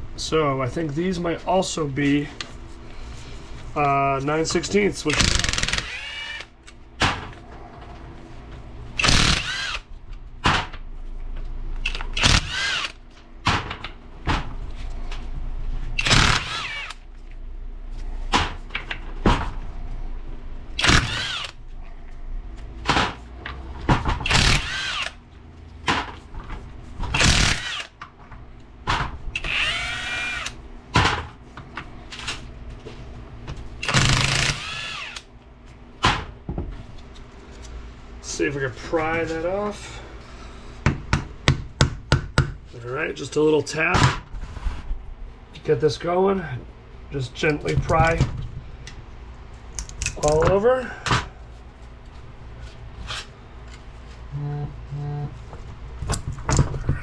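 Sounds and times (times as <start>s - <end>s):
power tool bursts: 5.1s - 6.5s, 9.0s - 9.9s, 11.9s - 13.0s, 16.0s - 17.0s, 20.8s - 21.6s, 24.2s - 25.2s, 27.1s - 27.9s, 29.4s - 30.6s, 33.8s - 35.2s.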